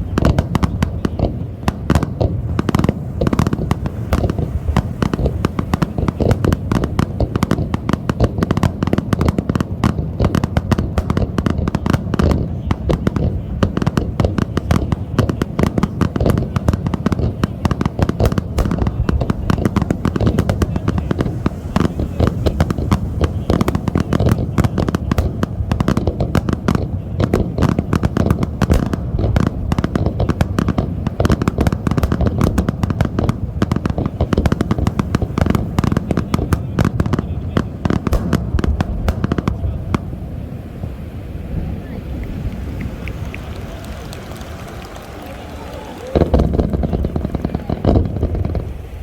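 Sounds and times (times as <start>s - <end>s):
fireworks bangs and cracks: 0.0s - 49.0s.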